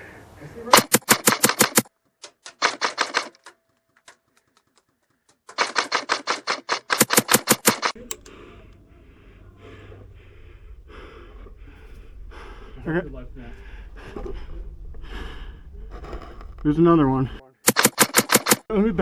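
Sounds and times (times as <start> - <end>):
airsoft rifle firing bursts: 0.7 - 1.9, 2.6 - 3.4, 5.6 - 8.0, 17.7 - 18.7
heavy breathing: 8.0 - 17.4.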